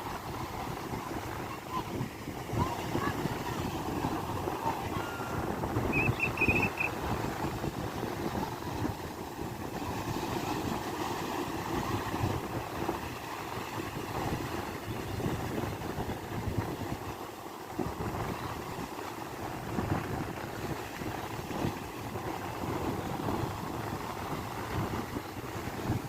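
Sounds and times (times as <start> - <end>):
sea waves washing on shore: 0.0 - 26.0
wind buffeting microphone: 0.0 - 26.0.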